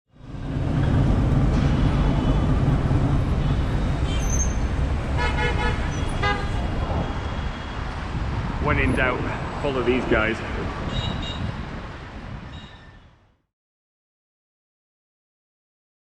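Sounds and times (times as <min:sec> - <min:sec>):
city traffic rumble: 0:00.1 - 0:12.4
vehicle horn tooting: 0:03.4 - 0:07.7.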